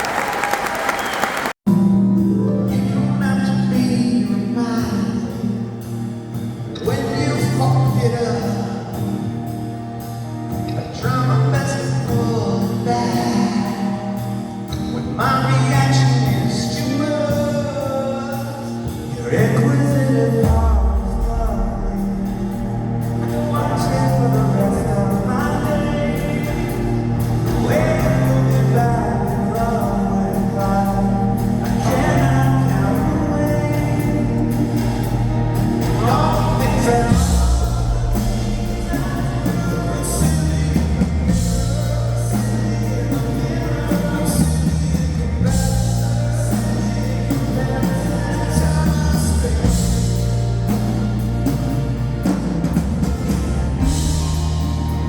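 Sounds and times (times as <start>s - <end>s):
live rock band playing: 1.7s - 55.0s
person singing long sliding notes: 6.7s - 55.0s.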